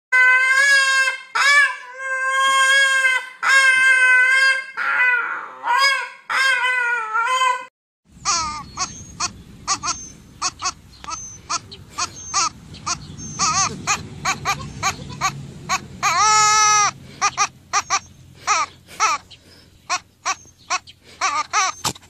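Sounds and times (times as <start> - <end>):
animal crying loudly: 0.2 - 22.0
animal chirping calls: 8.2 - 22.0.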